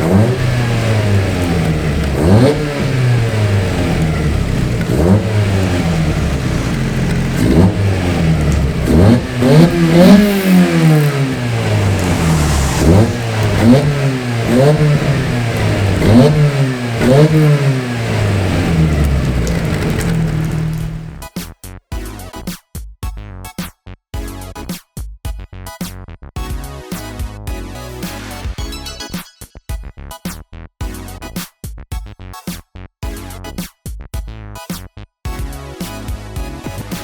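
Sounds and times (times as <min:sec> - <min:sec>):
car engine idling and revving: 0:00.0 - 0:21.2.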